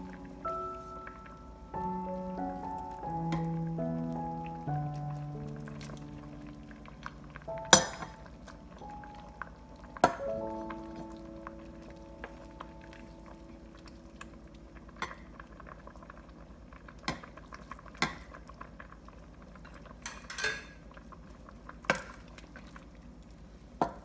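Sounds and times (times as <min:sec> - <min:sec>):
soup bubbling in a pot: 0:00.0 - 0:24.0
metal utensil clinking: 0:20.0 - 0:20.7.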